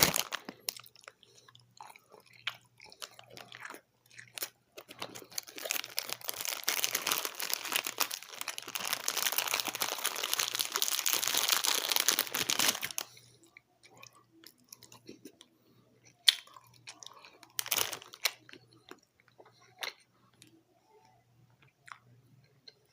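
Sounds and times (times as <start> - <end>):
chewing gummy candy crunching: 0.0 - 22.9
mouth clicks and smacks: 16.0 - 17.4.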